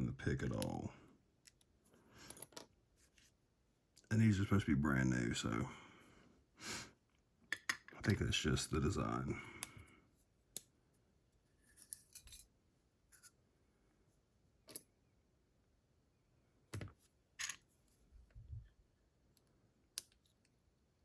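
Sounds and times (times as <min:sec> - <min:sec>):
faint clicks of lock parts: 0:01.4 - 0:02.8, 0:07.5 - 0:08.0, 0:10.5 - 0:10.8, 0:11.7 - 0:12.5, 0:19.2 - 0:20.6.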